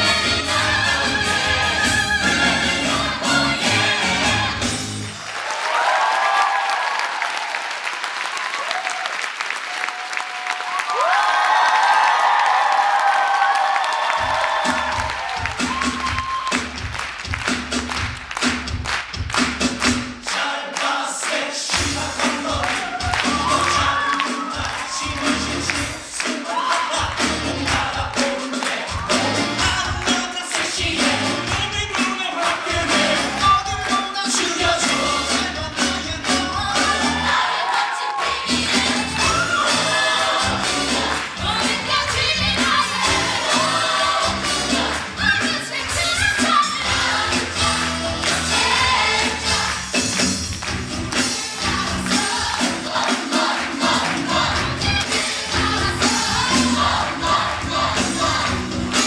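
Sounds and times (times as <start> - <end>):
people singing: 0.0 - 5.1, 20.2 - 50.4, 51.1 - 59.0
upbeat band music: 0.0 - 5.5, 14.0 - 59.0.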